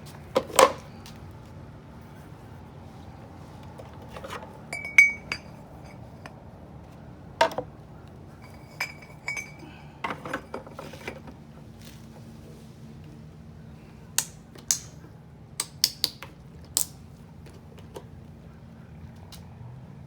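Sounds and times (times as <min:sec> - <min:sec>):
light metal clinks and knocks: 0:04.2 - 0:06.4, 0:08.4 - 0:10.7.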